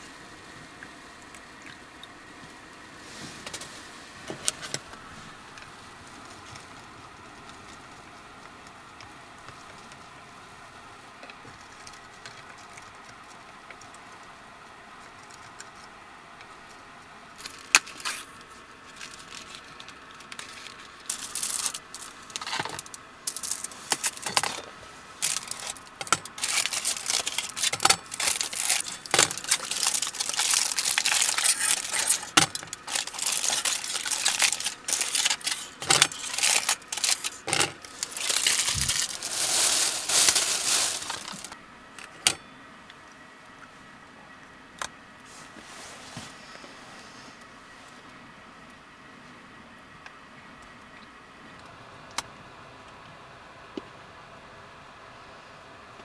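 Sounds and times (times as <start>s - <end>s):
faint steady hum: 0.0s - 56.0s
crinkling and rustling: 2.5s - 10.3s, 11.1s - 14.3s, 14.9s - 42.4s.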